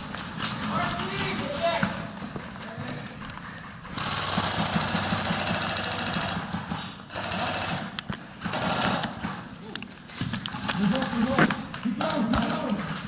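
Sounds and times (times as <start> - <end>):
airsoft rifle firing full auto: 4.0 - 9.4.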